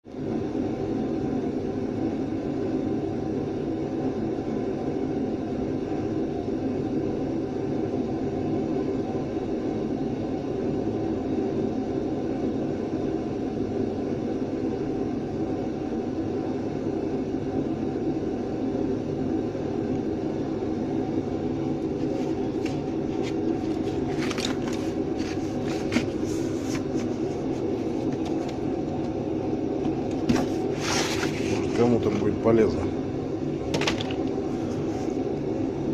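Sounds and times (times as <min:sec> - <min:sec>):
heat gun blower hum: 0:13.5 - 0:35.9
handling clicks and scrapes: 0:30.3 - 0:31.8.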